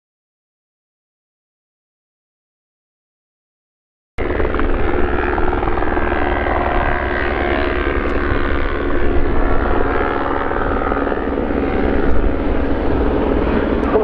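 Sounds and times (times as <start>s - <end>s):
helicopter rotor chop: 4.2s - 14.0s
turbine whine: 4.2s - 14.0s.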